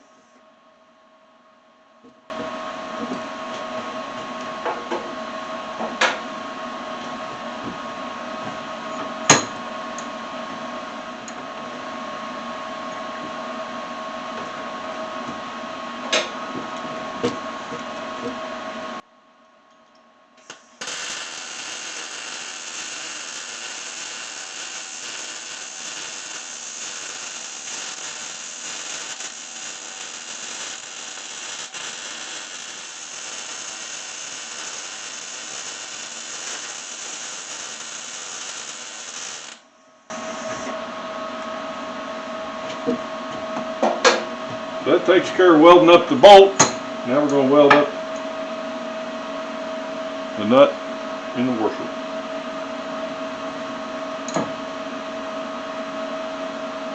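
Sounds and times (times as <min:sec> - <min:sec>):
arc welder crackling hiss: 0:20.4 - 0:39.6
machine hum: 0:20.5 - 0:40.6.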